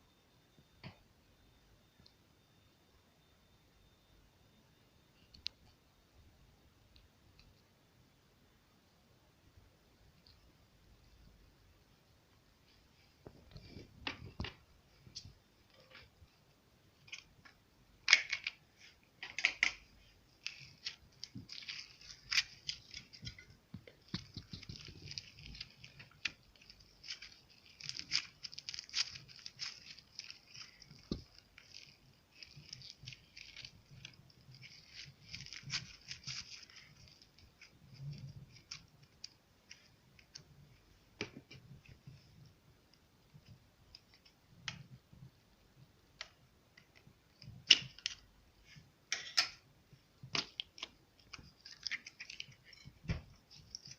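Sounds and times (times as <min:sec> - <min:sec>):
slime being kneaded: 0:20.3 - 0:40.5.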